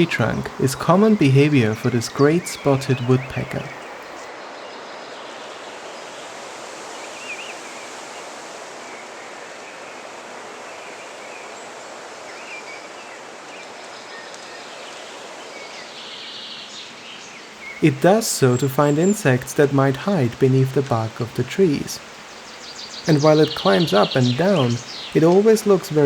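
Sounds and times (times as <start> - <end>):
faint bird chirps: 0.0 - 4.3, 17.6 - 26.0
steady background hiss: 0.0 - 26.0.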